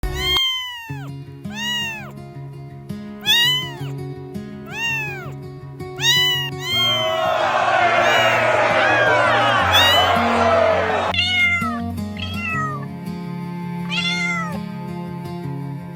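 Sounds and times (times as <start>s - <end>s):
cat meowing: 0.0s - 2.2s, 3.2s - 3.9s, 4.7s - 5.4s, 6.0s - 7.0s, 8.0s - 8.5s, 9.7s - 10.0s, 11.1s - 12.9s, 13.9s - 14.6s.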